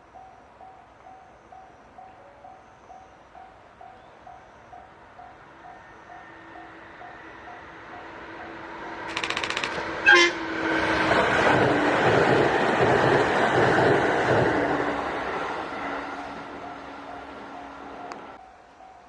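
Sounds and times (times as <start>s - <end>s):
crossing warning bell dinging: 0.1s - 9.0s, 9.9s - 10.6s, 15.8s - 19.0s
train wheels clattering on rails: 9.0s - 15.7s
rapid clicking: 9.1s - 10.0s
train horn toot: 10.0s - 10.8s.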